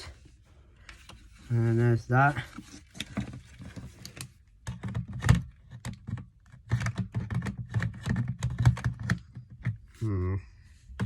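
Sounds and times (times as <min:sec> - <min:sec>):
plastic clicks and knocks: 0:02.6 - 0:09.8.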